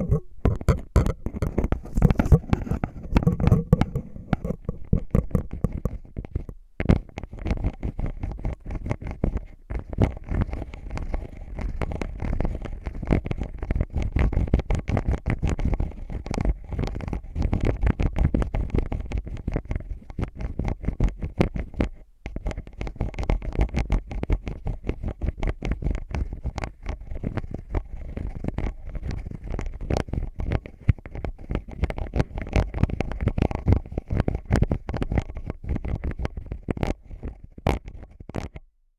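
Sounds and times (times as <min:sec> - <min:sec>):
eyeglasses scratched and tapped: 0:00.0 - 0:38.7.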